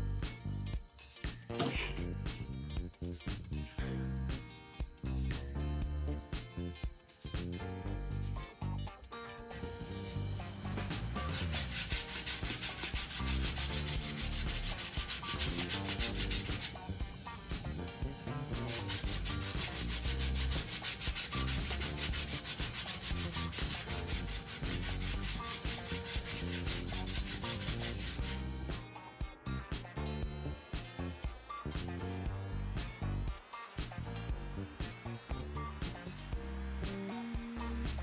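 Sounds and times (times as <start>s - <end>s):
sandpaper sanding strokes: 9.4s - 28.8s.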